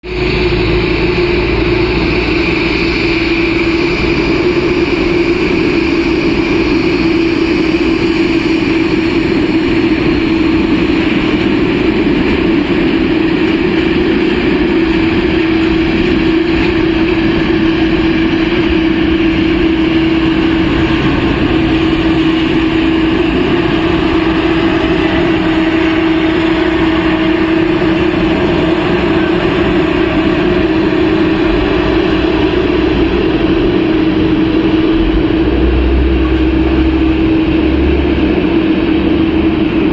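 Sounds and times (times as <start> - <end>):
jet engines droning: 0.0 - 39.9.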